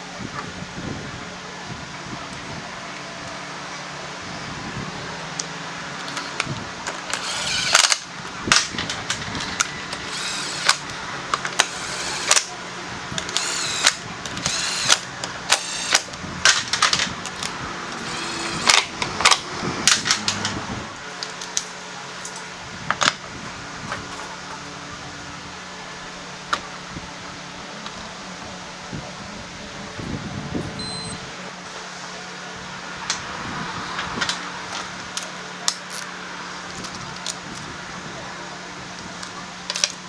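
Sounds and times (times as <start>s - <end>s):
workshop hum: 0.0s - 40.0s
metal tools clanking: 6.0s - 12.6s
high squeaks: 7.0s - 8.2s.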